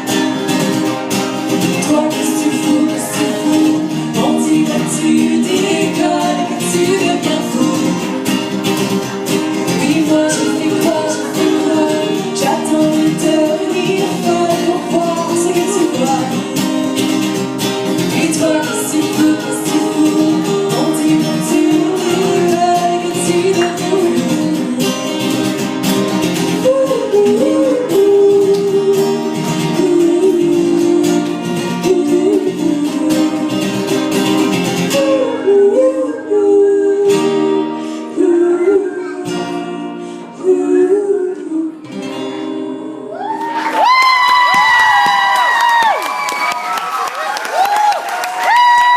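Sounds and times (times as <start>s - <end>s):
live pop band: 0.0s - 48.9s
woman singing: 1.6s - 8.6s, 9.5s - 17.2s, 17.9s - 43.1s
audience cheering and whooping: 43.1s - 48.9s.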